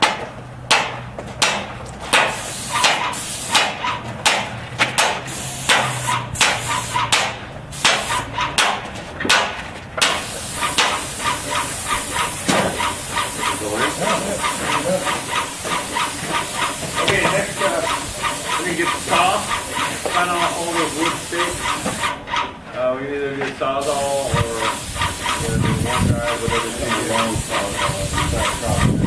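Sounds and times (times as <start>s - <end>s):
paint sprayer hissing: 2.1s - 4.0s, 5.0s - 8.4s, 10.0s - 22.3s, 23.8s - 29.0s
fast regular ticking: 10.0s - 22.1s, 23.8s - 29.0s.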